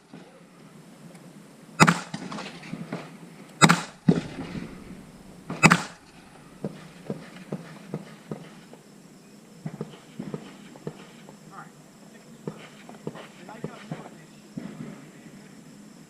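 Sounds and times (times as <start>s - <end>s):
gunshots: 1.8s - 2.4s, 3.6s - 7.9s.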